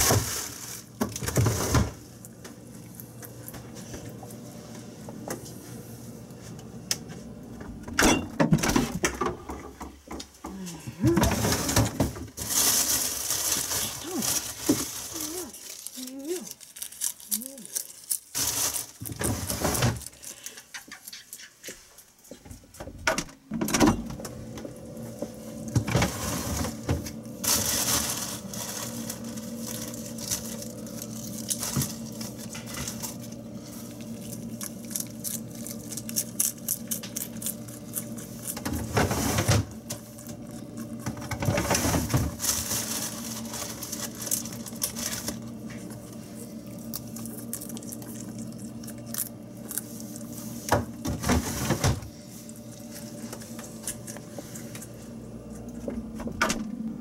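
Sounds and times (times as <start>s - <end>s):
rustling: 12.4s - 21.9s
rabbit chewing greens: 12.4s - 22.4s, 24.8s - 51.0s, 52.1s - 56.1s
steady low hum: 23.4s - 57.0s.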